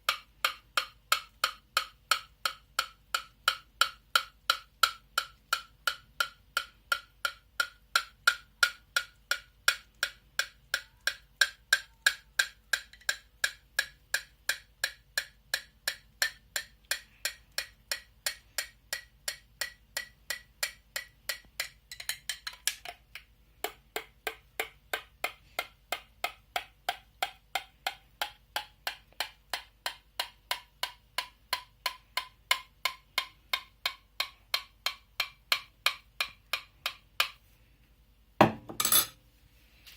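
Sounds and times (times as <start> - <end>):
spoon tapping a cup: 0.0 - 37.4, 38.4 - 39.2
spoon stirring a drink: 21.3 - 23.0.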